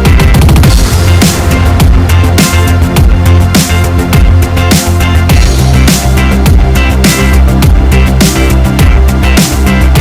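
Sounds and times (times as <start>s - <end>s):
electronic music with heavy bass: 0.0s - 10.0s.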